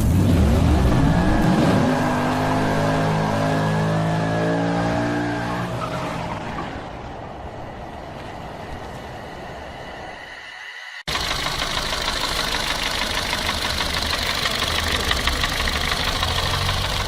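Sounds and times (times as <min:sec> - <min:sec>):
rushing noise: 0:06.2 - 0:11.8.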